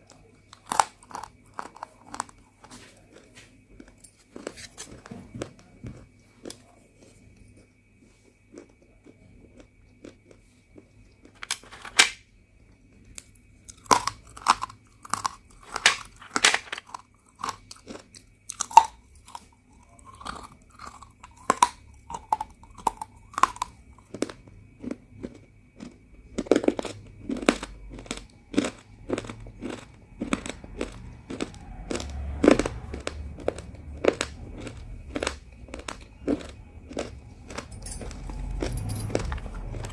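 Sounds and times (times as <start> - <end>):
crunchy chewing: 0.0 - 39.9.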